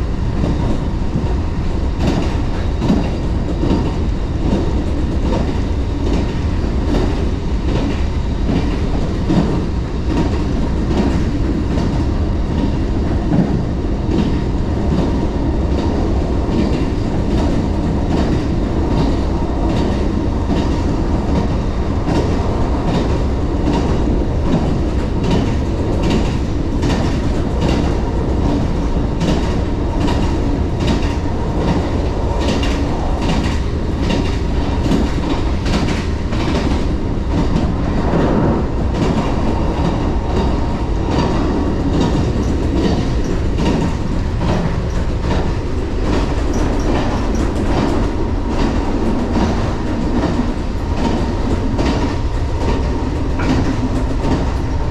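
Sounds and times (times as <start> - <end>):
train heavy rumble: 0.0 - 54.9
wheels clicking over rail joints: 39.0 - 54.9.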